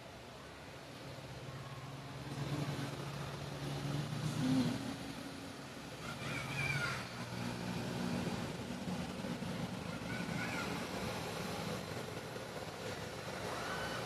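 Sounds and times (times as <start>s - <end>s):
continuous noise wash: 0.0s - 14.0s.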